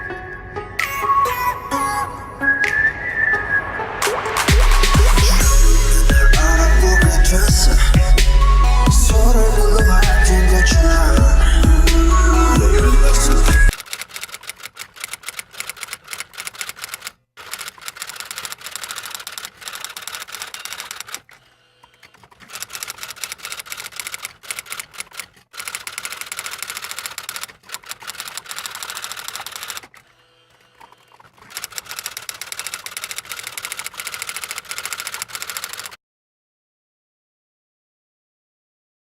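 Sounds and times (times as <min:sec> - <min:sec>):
typewriter keys clacking: 0:13.7 - 0:21.3, 0:22.1 - 0:29.9, 0:30.8 - 0:36.0.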